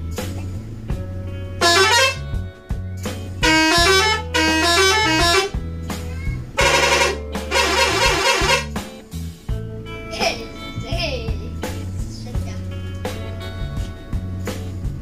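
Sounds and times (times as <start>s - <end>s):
multi-tone horn playing tunes: 1.6s - 2.3s, 3.4s - 5.6s, 6.6s - 8.8s.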